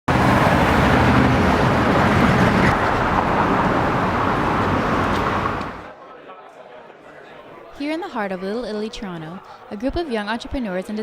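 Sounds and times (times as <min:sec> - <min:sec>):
passing cars: 0:00.1 - 0:05.9.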